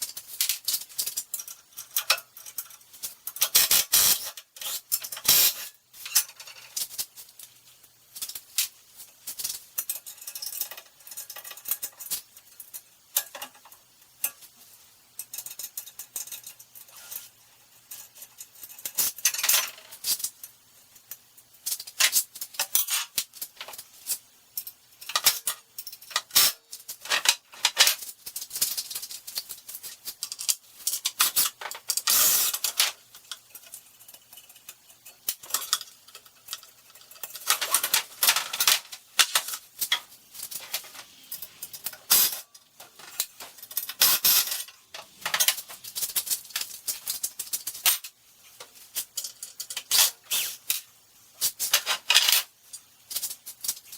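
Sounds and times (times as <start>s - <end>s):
small metal parts clinking: 0.0s - 53.9s.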